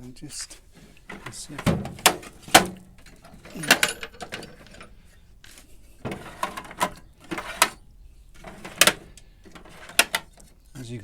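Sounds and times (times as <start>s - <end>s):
small metal parts clicking: 0.4s - 11.0s.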